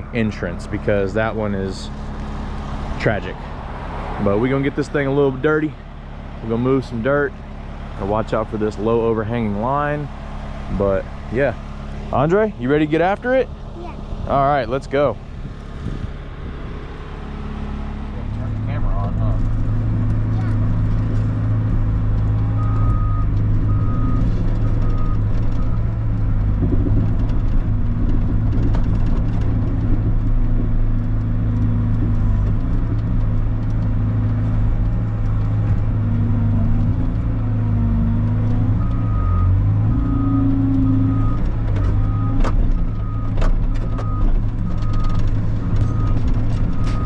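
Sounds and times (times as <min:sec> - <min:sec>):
diesel engine working under load: 0:00.0 - 0:47.0
reversing alarm beeping: 0:38.8 - 0:43.3, 0:45.8 - 0:47.0.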